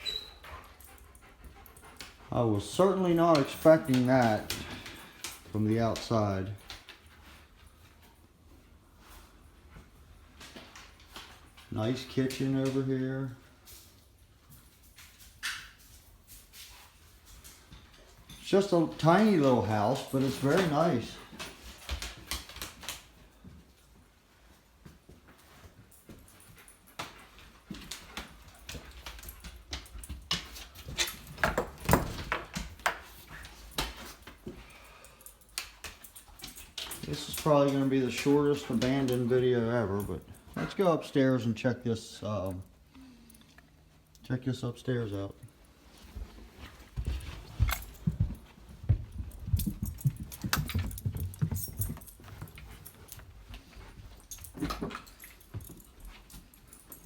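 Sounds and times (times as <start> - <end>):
footsteps on wooden floor: 46.0 - 56.9.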